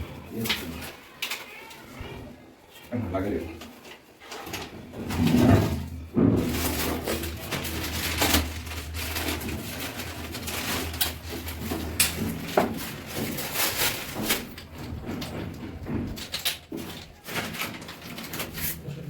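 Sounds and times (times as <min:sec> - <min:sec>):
handling noises: 0:03.5 - 0:19.0.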